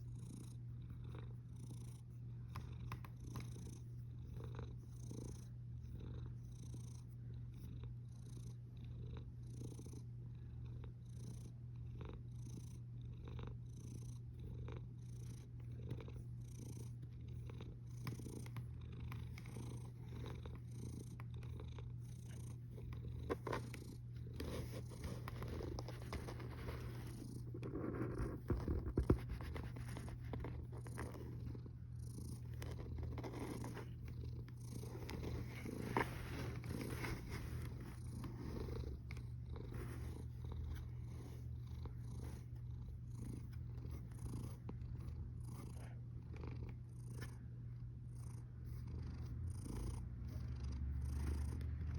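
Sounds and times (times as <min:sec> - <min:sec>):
steady low hum: 0:00.0 - 0:51.9
cat snoring: 0:19.5 - 0:47.2, 0:48.2 - 0:51.9.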